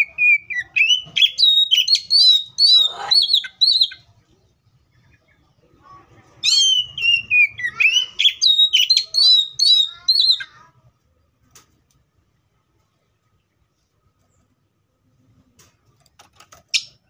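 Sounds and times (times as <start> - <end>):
bird singing: 0.0 - 5.8, 6.4 - 10.6.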